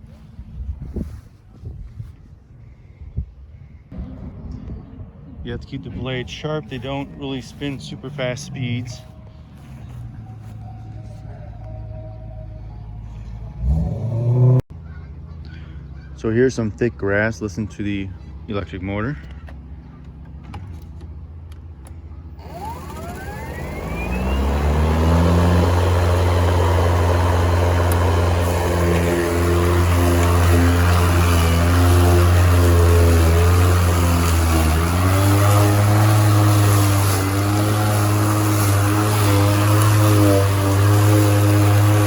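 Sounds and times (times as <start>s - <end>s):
electric lawn mower motor: 22.3s - 42.0s.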